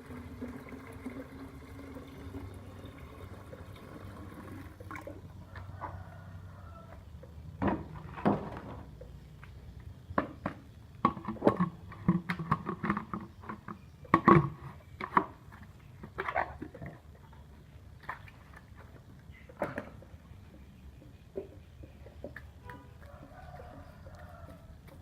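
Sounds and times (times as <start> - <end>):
containers knocking and clattering: 10.1 - 17.0.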